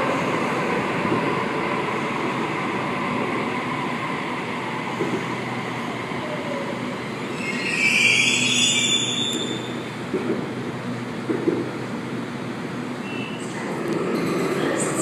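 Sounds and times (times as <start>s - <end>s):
electric train rumbling: 0.0s - 15.0s
train wheels squealing: 7.2s - 9.9s, 13.0s - 13.6s.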